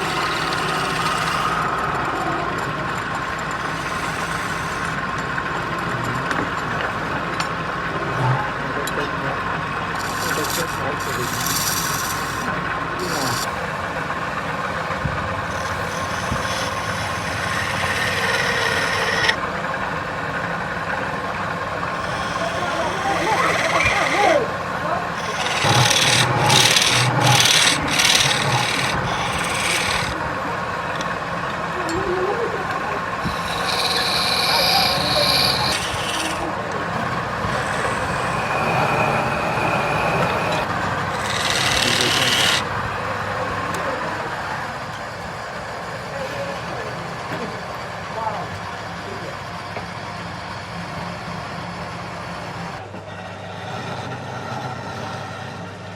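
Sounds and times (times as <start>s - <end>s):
tool hissing on spinning wood: 0.0s - 1.9s, 3.2s - 5.0s, 9.9s - 19.4s, 21.9s - 30.2s, 33.0s - 42.8s
wood lathe running: 0.0s - 5.5s, 9.4s - 19.4s, 21.7s - 31.6s, 32.5s - 44.4s.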